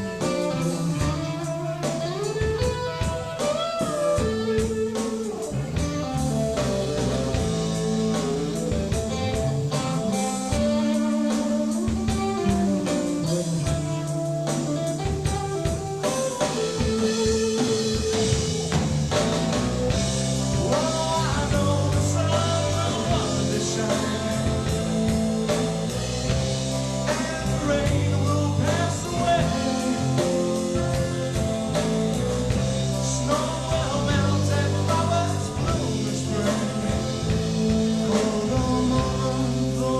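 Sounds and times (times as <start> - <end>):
live rock band: 0.0 - 39.9
person singing: 20.5 - 25.5, 27.0 - 31.4, 32.9 - 39.9.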